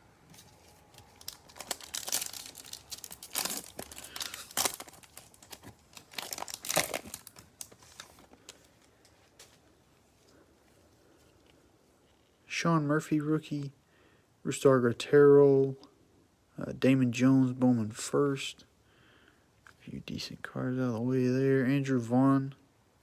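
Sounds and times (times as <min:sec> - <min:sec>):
foil wrapper crinkling and tearing: 0:00.4 - 0:09.1.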